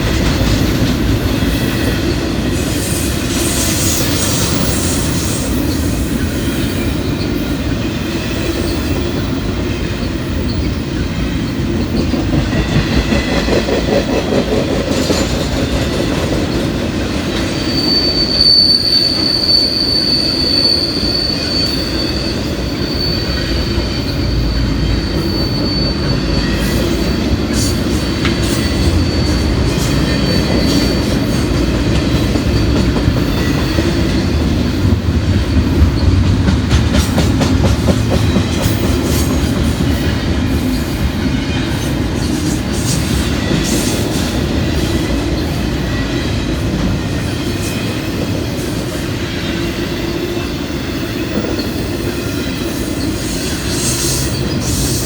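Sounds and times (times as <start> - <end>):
train wheels rumbling on rail: 0.0 - 55.0
wheels clicking over rail joints: 8.8 - 17.6
high wheel squeal: 17.3 - 34.3, 49.4 - 55.0.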